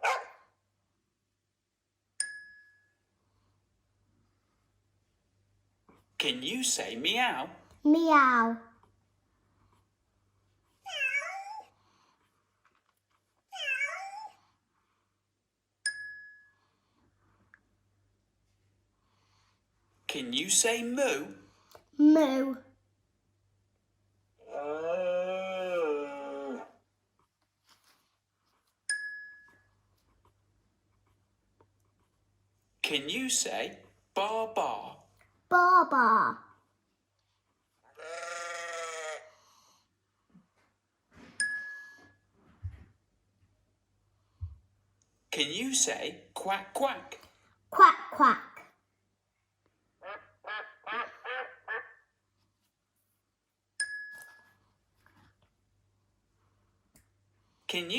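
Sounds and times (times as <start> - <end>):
cow mooing: 38.0 - 39.3
duck quacking: 50.0 - 52.1.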